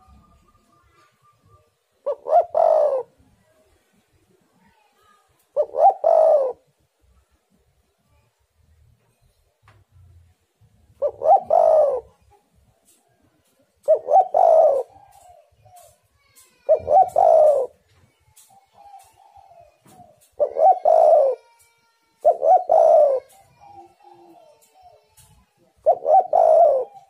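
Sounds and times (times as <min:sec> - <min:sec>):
dove cooing: 0:00.0 - 0:03.4, 0:05.6 - 0:06.7, 0:10.9 - 0:13.0, 0:13.8 - 0:27.0.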